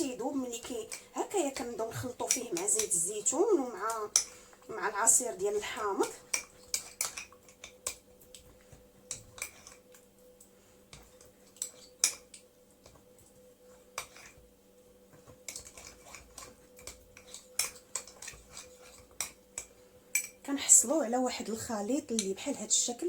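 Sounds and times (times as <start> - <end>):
spoon clinking against dish: 15.5 - 20.4.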